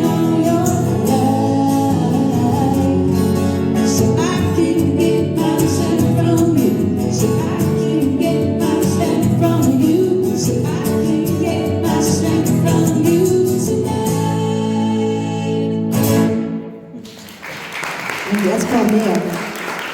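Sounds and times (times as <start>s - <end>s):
person singing: 0.0s - 15.9s
guitar strumming: 0.0s - 17.0s
audience applause: 17.0s - 19.9s.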